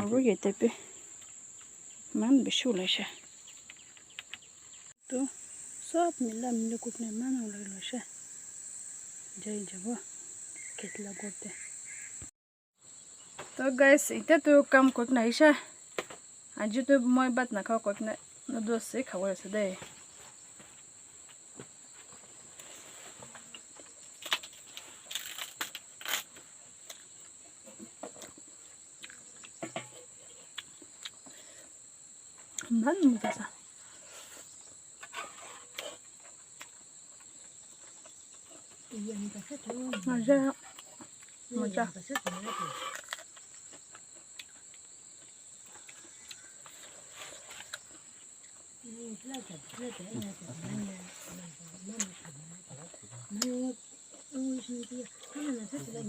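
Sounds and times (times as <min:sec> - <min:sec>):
insects chirring: 0:00.0 - 0:56.0
plants rustling and clicking: 0:22.0 - 0:28.4.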